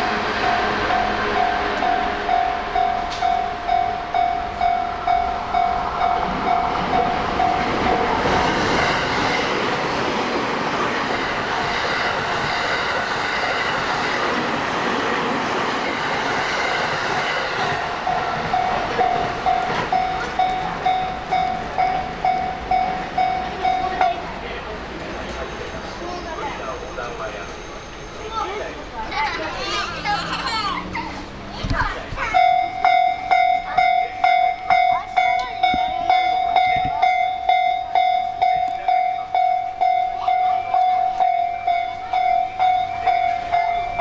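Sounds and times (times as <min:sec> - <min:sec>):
train wheels clacking on rails: 0:00.0 - 0:44.0
level crossing bell ringing: 0:00.5 - 0:08.3, 0:17.9 - 0:24.2, 0:32.4 - 0:44.0.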